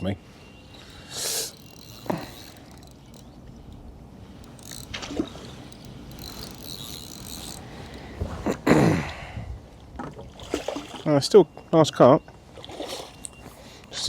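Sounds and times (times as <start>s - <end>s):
fishing reel ratcheting whir: 0.7s - 8.0s.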